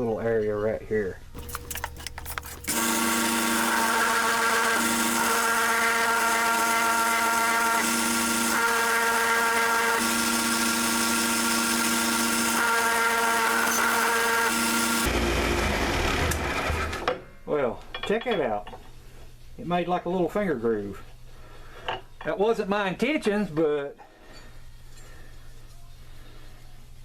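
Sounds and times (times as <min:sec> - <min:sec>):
sander grinding steel: 0:01.4 - 0:15.1.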